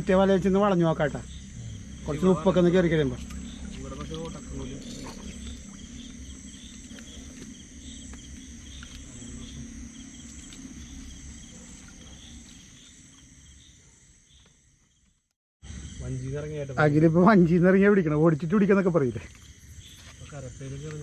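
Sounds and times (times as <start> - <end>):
low rumbling noise: 0.0 - 12.8
insects trilling: 0.0 - 21.0.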